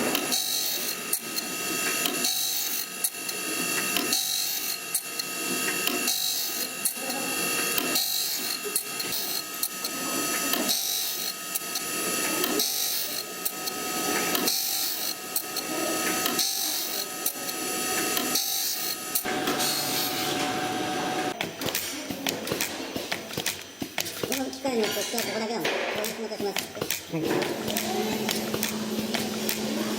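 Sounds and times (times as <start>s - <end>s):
saw-making machine working: 0.0s - 21.4s, 26.6s - 29.9s
steady high whine: 13.1s - 21.4s.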